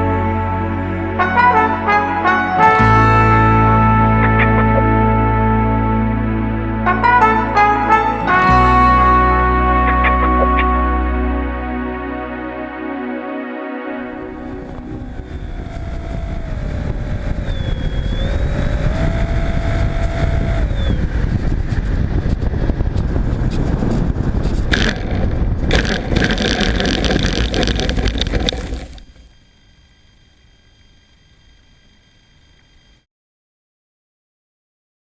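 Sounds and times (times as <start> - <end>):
electric motor whine: 14.1 - 22.4
wind rushing over microphone: 14.1 - 29.2.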